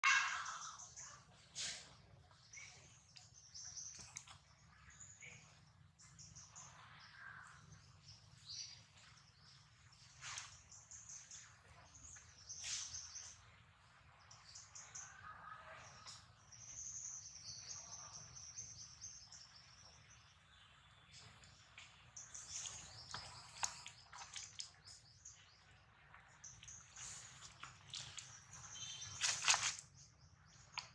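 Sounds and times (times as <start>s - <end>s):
bird chirps and calls: 26.5s - 30.9s.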